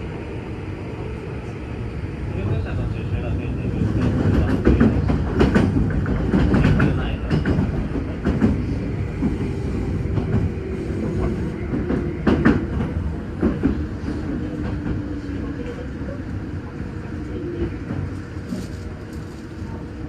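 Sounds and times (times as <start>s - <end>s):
train low rumble and hum: 0.0s - 20.0s
train wheels clacking over joints: 4.0s - 15.0s.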